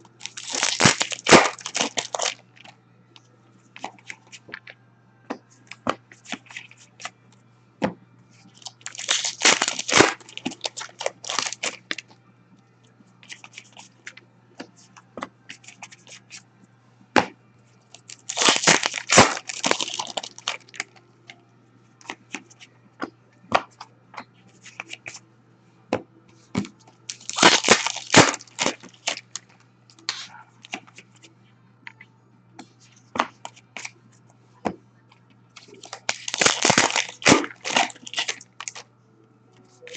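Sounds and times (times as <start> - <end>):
steady low hum: 0.0 - 39.9
card pack wrappers tearing: 0.1 - 2.4, 8.6 - 12.0, 18.0 - 21.0, 27.1 - 29.5, 35.6 - 38.8.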